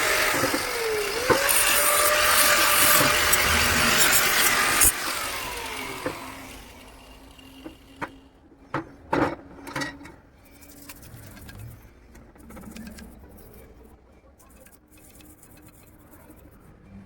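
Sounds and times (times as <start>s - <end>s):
machine spinning down: 0.0s - 8.0s.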